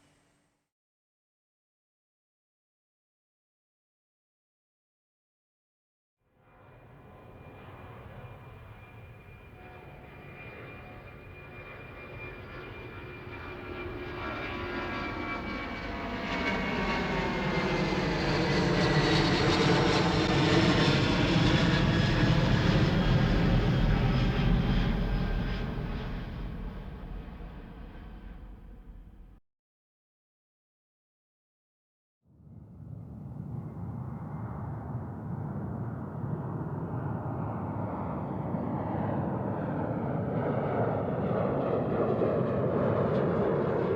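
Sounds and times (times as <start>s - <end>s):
airplane flying past: 6.5s - 29.4s, 32.3s - 43.9s.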